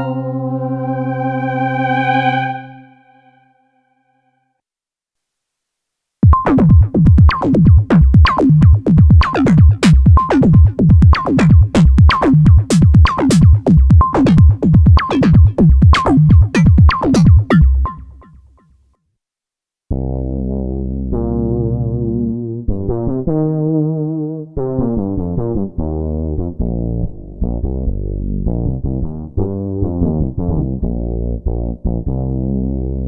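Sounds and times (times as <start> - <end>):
sustained synthesizer chord: 0.0 - 3.5
synthesizer rhythm of punchy notes: 6.2 - 18.3.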